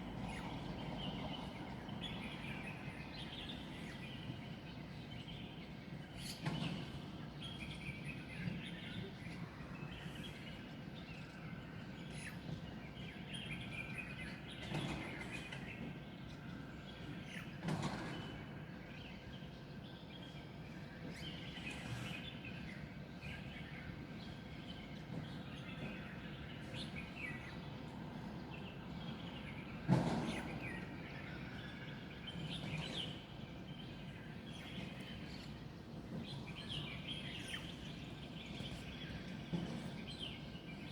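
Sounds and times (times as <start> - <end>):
city background hum: 23.2 - 40.9.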